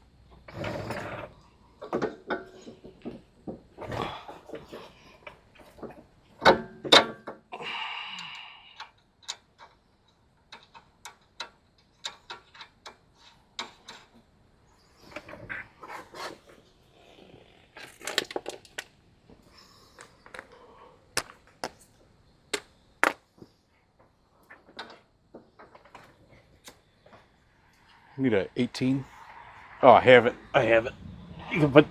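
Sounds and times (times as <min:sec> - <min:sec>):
metal tools clinking: 0:17.8 - 0:18.9, 0:19.6 - 0:21.9
loud metal knocks: 0:22.6 - 0:23.2.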